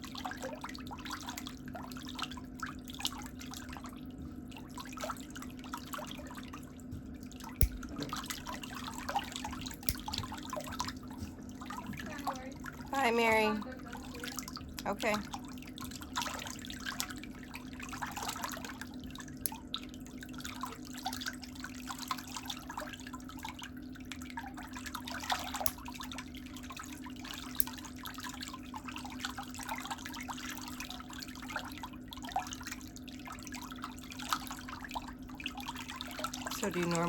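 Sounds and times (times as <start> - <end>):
steady low hum: 0.0 - 37.0
water sloshing and dripping: 0.0 - 37.0
small splashes: 13.8 - 37.0.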